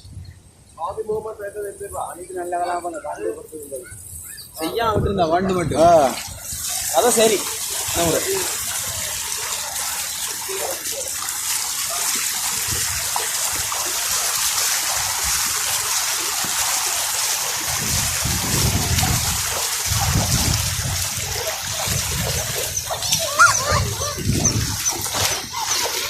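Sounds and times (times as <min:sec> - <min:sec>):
floodwater rushing: 0:04.6 - 0:26.0.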